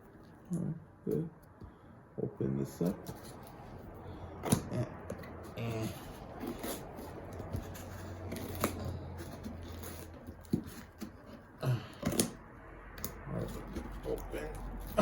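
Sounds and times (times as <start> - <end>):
scissors cutting package: 4.4 - 12.4.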